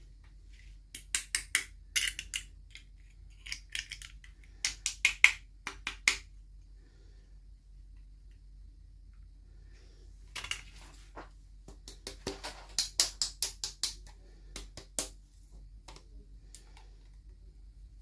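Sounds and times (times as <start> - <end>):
plastic toy pieces clicking: 1.0 - 6.2.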